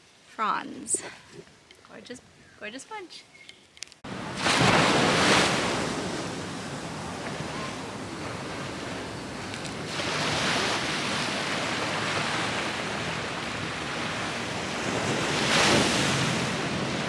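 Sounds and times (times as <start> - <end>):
ocean surf washing ashore: 4.1 - 17.0
wind on the microphone: 4.1 - 17.0.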